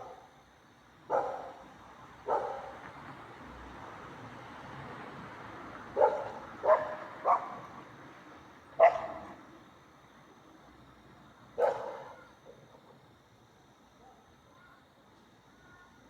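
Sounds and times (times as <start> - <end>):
dog barking: 1.1 - 1.6, 2.3 - 2.8, 6.0 - 7.6, 8.8 - 9.2, 11.6 - 12.3.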